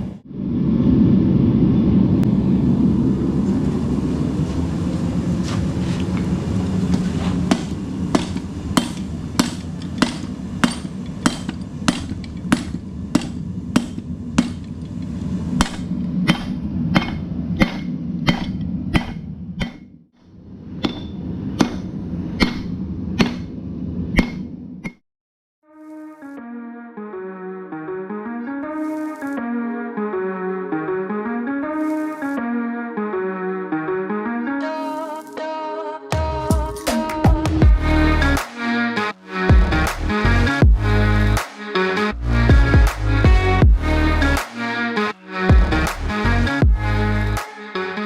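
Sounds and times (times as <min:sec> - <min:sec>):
steady low roar: 0:00.0 - 0:19.5
hammer striking metal on anvil: 0:06.9 - 0:14.8, 0:15.6 - 0:20.0, 0:20.8 - 0:23.6, 0:24.2 - 0:25.0.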